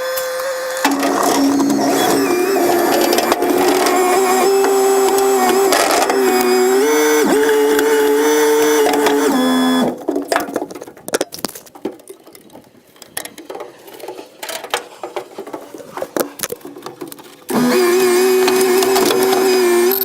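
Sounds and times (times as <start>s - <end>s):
excavator hydraulics whining: 0.0s - 10.2s, 17.5s - 20.0s.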